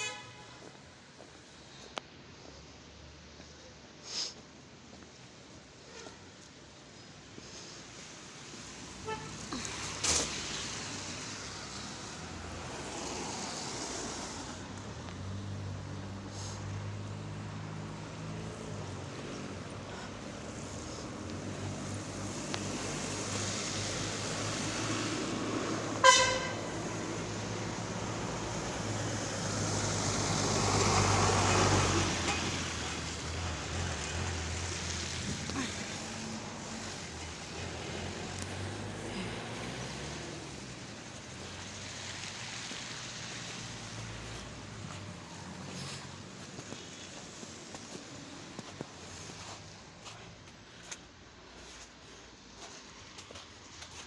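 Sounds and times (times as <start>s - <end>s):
car horn honk: 0.0s - 0.6s, 26.0s - 26.6s
vehicle passing: 8.8s - 50.4s
vehicle engines running: 13.7s - 54.0s.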